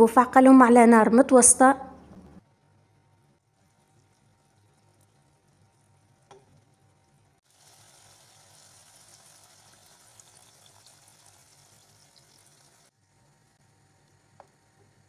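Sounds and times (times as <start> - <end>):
food sizzling in a pot: 3.6 - 15.0.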